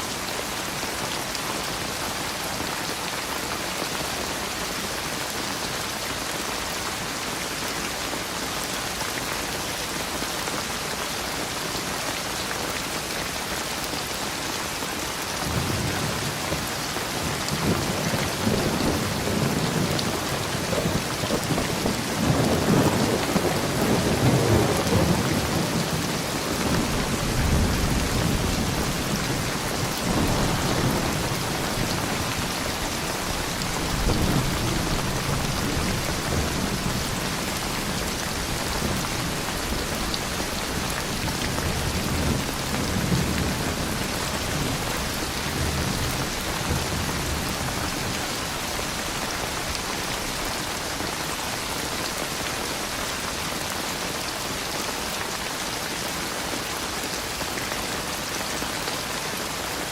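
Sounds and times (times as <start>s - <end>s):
heavy rain hissing: 0.0s - 58.8s
thunder rumbling: 17.4s - 48.0s.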